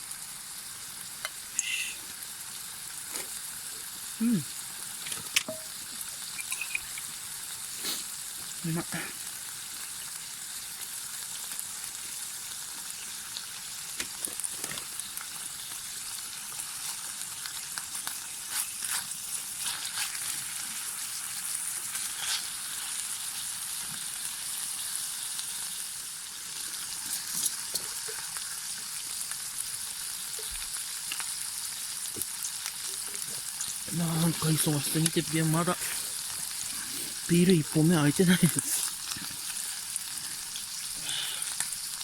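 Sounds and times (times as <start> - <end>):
food sizzling in a pan: 0.0 - 42.0
small pops and crackles: 13.9 - 15.4, 30.3 - 31.3.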